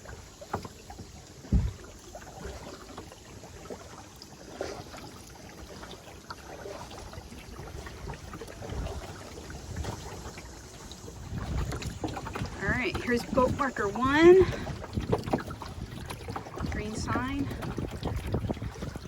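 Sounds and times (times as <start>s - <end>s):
paddle splashing in water: 0.0s - 19.0s
dull knock: 1.5s - 1.8s.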